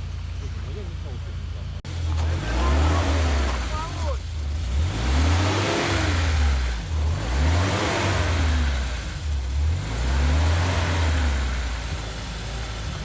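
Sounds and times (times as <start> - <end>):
off-road vehicle engine revving: 0.0 - 13.0.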